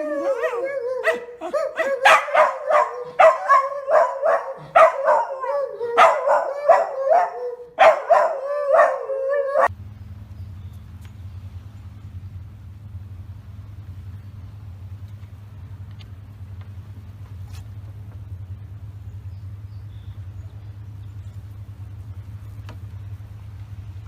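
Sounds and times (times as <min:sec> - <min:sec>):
low hum: 0:00.0 - 0:24.0
dog barking sharply: 0:00.4 - 0:09.0.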